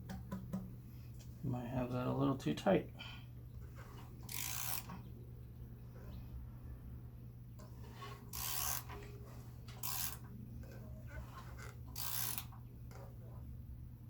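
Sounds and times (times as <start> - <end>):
low hum: 2.9 - 14.0.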